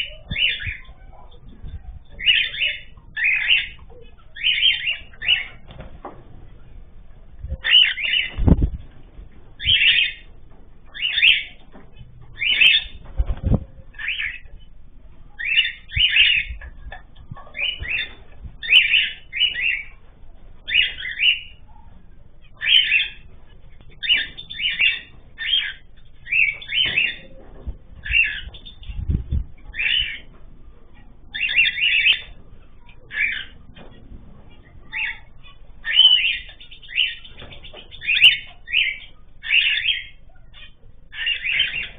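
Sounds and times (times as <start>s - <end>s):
pet birds chirping: 0.0s - 41.9s
dull low thumps: 6.2s - 10.9s, 27.2s - 29.8s.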